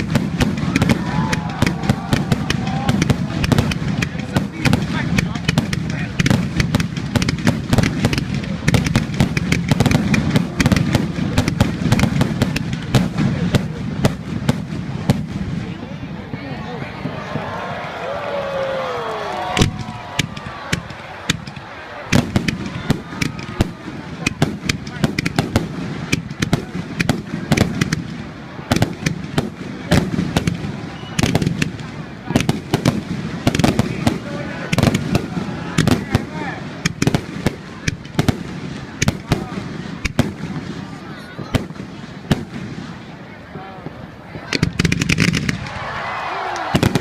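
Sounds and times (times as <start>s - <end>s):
fireworks cracks and bangs: 0.0s - 47.0s.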